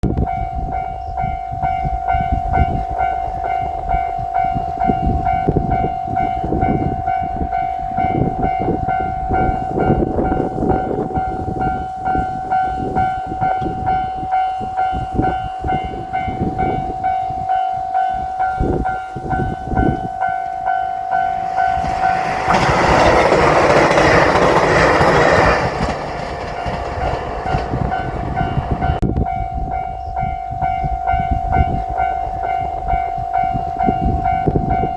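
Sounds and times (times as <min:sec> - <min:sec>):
railroad crossing bell ringing: 0:00.0 - 0:34.9
train rumbling past: 0:00.1 - 0:34.9
wheels clattering on rails: 0:18.6 - 0:29.8.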